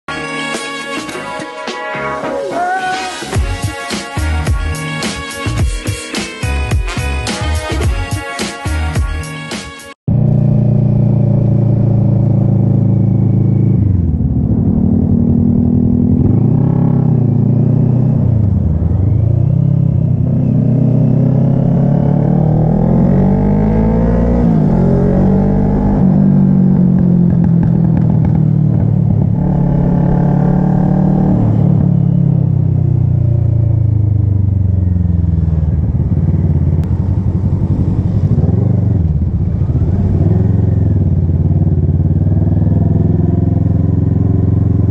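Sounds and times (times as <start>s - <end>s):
motorcycle engine revving: 10.1s - 44.9s.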